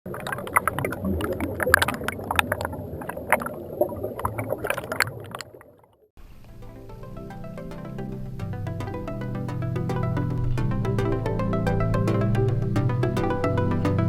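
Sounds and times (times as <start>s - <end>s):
water splashing and sloshing: 0.1s - 6.1s.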